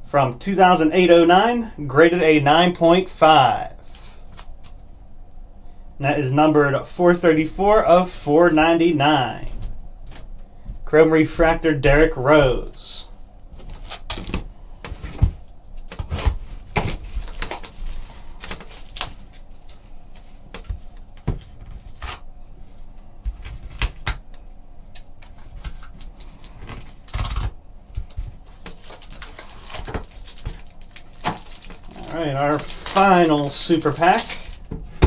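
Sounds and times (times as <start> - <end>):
packaging rustling: 12.6 - 35.0.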